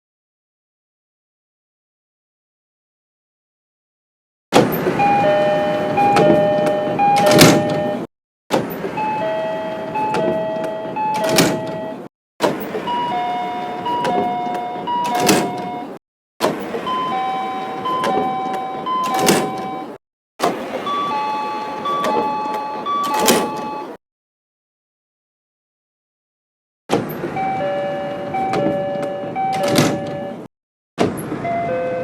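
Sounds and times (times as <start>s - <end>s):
train doors shutting thump: 4.6s - 24.0s, 28.2s - 30.3s
two-note train door chime: 4.9s - 8.1s, 8.8s - 12.1s, 12.7s - 16.0s, 16.7s - 24.0s, 27.4s - 30.5s.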